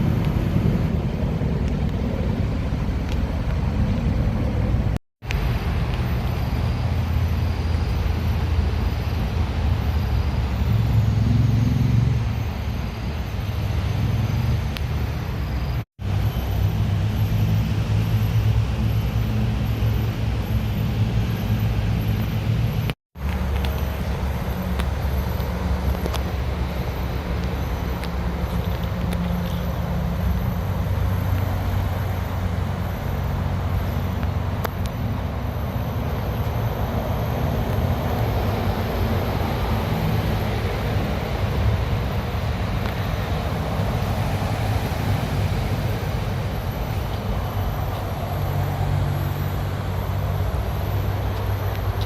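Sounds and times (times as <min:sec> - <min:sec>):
road traffic rumble: 0:00.0 - 0:52.0.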